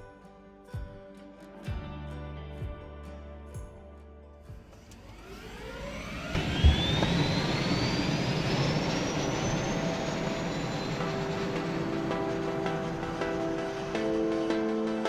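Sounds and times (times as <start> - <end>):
helicopter turbine whine: 4.7 - 15.0.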